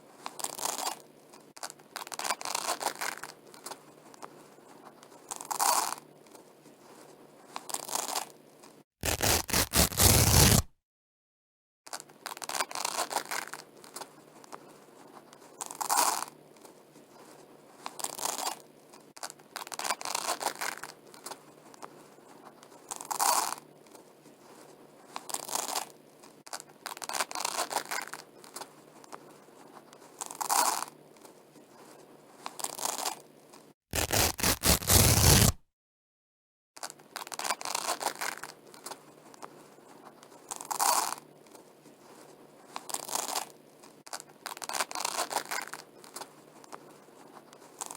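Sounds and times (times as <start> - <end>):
velcro strips ripping apart: 9.0 - 10.7, 33.9 - 35.6, 42.8 - 43.5.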